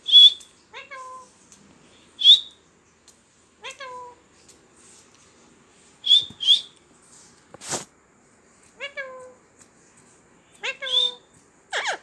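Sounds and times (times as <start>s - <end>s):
parrot meow-like call: 10.6s - 12.0s
parrot shrieking: 10.6s - 12.0s.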